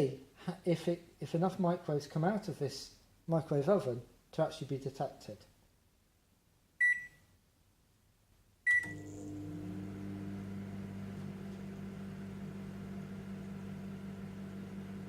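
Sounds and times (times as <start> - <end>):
microwave beep: 6.8 - 7.2, 8.7 - 10.4
microwave oven humming: 8.7 - 15.0.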